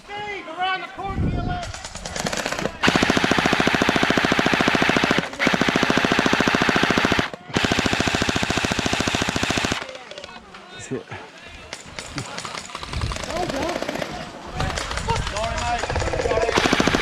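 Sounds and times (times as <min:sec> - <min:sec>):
gel blaster firing full-auto: 0:02.7 - 0:09.9, 0:16.4 - 0:17.0.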